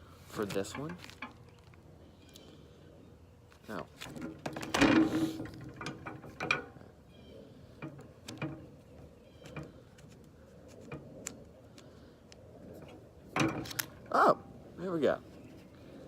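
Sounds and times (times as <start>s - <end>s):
bike lock clicks and knocks: 13.4s - 14.1s.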